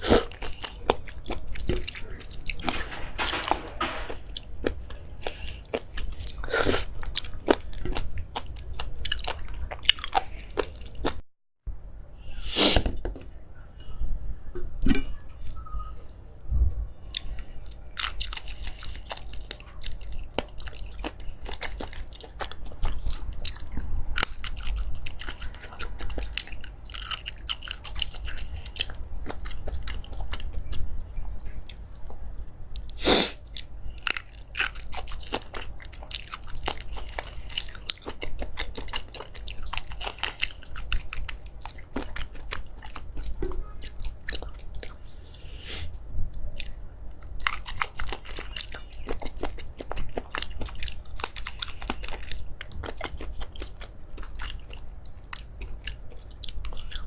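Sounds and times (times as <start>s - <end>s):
chewing crunchy food: 0.0s - 11.2s, 17.0s - 57.0s.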